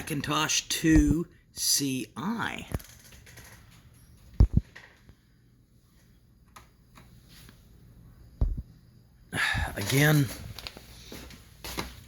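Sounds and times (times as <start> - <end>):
computer double thumps: 8.4 - 8.7.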